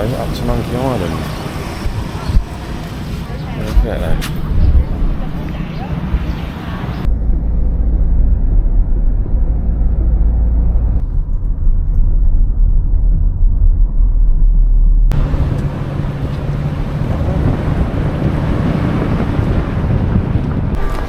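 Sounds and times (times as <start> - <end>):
vehicle rumble: 0.0 - 21.0.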